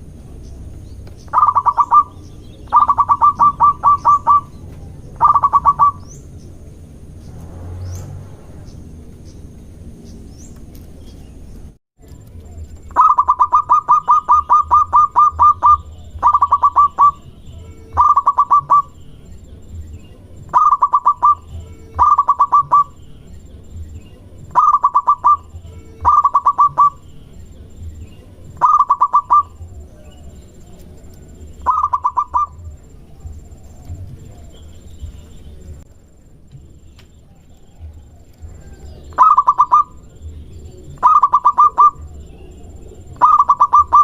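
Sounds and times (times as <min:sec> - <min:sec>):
dove staccato cooing: 0:00.7 - 0:06.1, 0:12.8 - 0:19.0, 0:20.4 - 0:23.0, 0:24.4 - 0:27.1, 0:27.8 - 0:34.9, 0:37.4 - 0:44.0.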